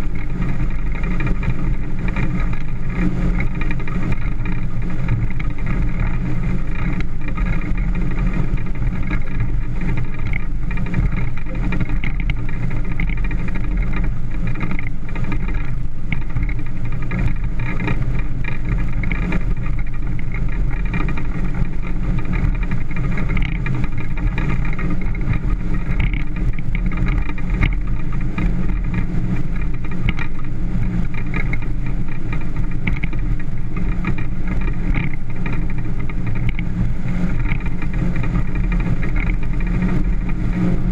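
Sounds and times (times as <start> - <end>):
motorboat engine humming: 0.0 - 40.9.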